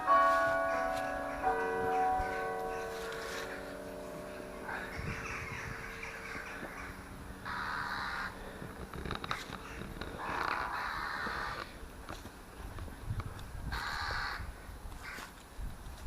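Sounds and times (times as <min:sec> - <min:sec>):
church bell ringing: 0:00.0 - 0:08.4
crows cawing: 0:00.0 - 0:11.8, 0:13.7 - 0:15.3.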